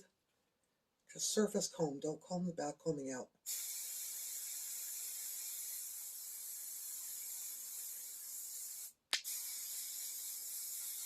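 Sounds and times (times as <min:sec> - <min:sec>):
aerosol spray hissing: 0:03.5 - 0:11.0.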